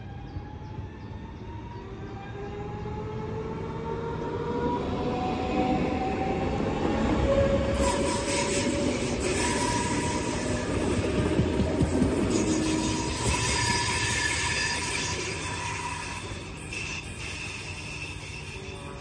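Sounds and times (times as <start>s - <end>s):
electric train whine: 0.0s - 19.0s
high-pitched squealing: 7.8s - 19.0s.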